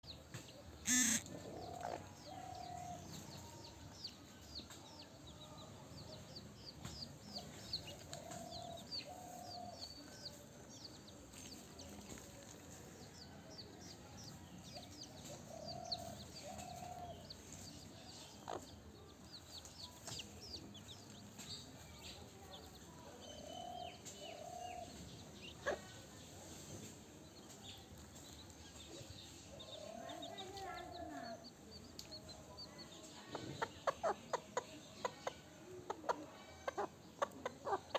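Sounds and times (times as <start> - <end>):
chickens clucking: 0.1 - 3.4, 14.4 - 37.9.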